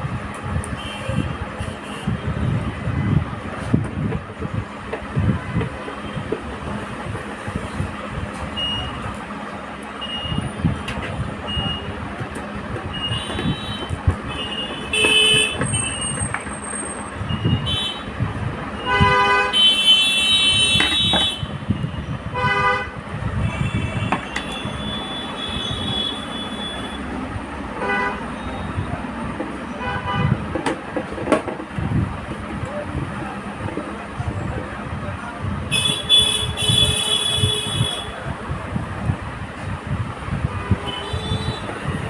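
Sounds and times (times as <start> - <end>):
vehicle horns honking: 0.7 - 2.6, 12.9 - 18.2, 18.8 - 27.1, 27.8 - 28.8, 29.8 - 30.5, 35.7 - 38.2, 40.5 - 42.0.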